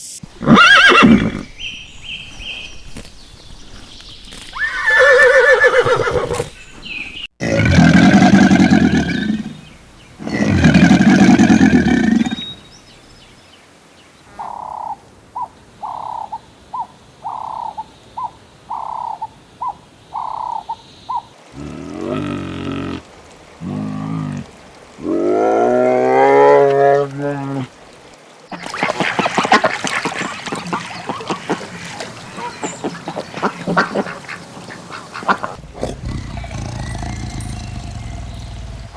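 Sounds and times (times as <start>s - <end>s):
farm animals calling: 0.3s - 12.9s.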